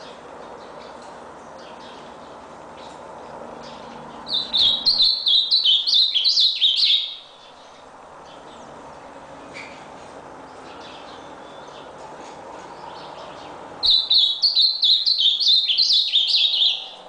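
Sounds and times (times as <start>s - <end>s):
grosbeak singing: 0.0s - 17.0s.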